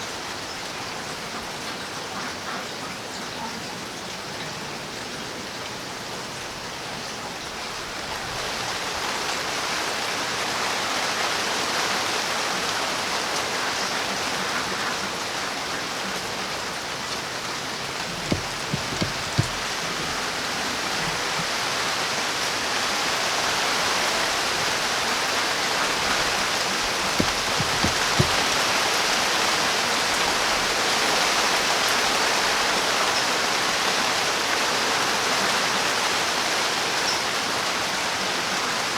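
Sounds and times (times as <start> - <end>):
dull knocks: 18.0 - 21.6, 26.0 - 28.7.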